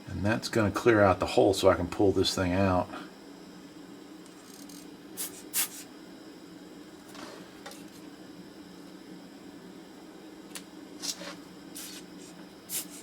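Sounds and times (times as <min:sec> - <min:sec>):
desoldering iron hissing puffs: 0:05.1 - 0:06.0, 0:11.0 - 0:13.0.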